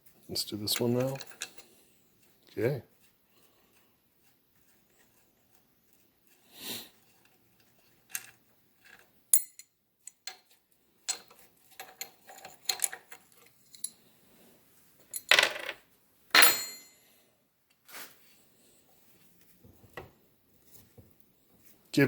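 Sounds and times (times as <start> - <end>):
metal tools and parts clinking: 0.7 - 1.8, 8.1 - 10.5, 11.1 - 14.0, 15.0 - 17.0.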